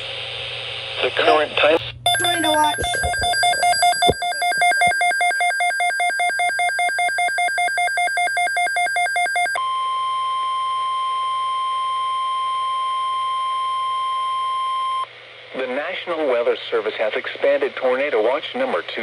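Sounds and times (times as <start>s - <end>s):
alternating electronic alert tone: 2.1s - 9.5s
steady single-pitched warning tone: 2.1s - 15.1s.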